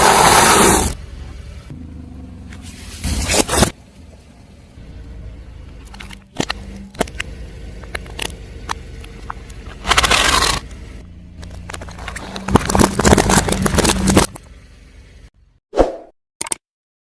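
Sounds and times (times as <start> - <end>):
car running slowly: 0.1 - 15.6
tyre crunching brittle objects: 9.6 - 10.7, 11.4 - 14.4.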